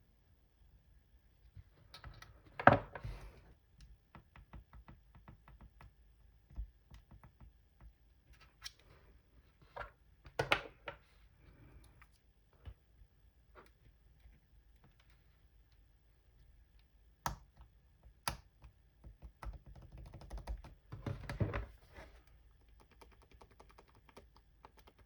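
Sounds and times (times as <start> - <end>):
keyboard clicks: 22.6 - 25.0.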